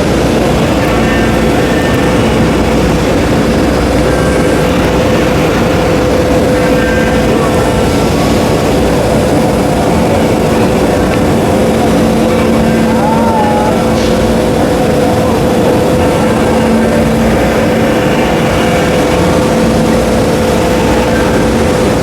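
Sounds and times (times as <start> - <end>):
cnc router spindle running: 0.0 - 22.0.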